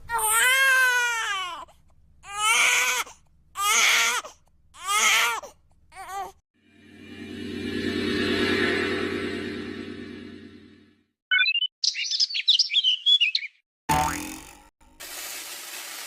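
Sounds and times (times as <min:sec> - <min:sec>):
baby crying: 0:02.2 - 0:06.4
steady droning sound: 0:06.6 - 0:11.0.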